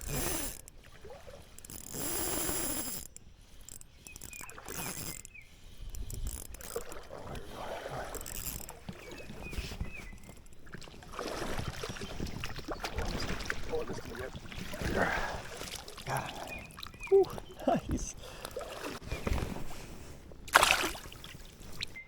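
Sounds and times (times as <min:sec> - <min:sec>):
fishing reel being cranked: 0:00.0 - 0:10.6
reel drag ticking: 0:00.0 - 0:19.0.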